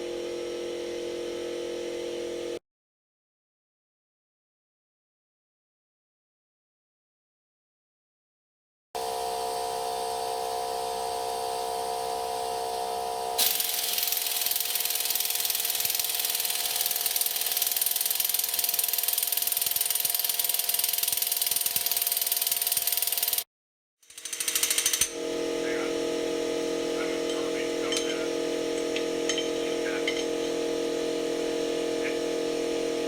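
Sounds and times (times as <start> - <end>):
air wrench whining and rattling: 13.4 - 23.4, 24.0 - 25.2.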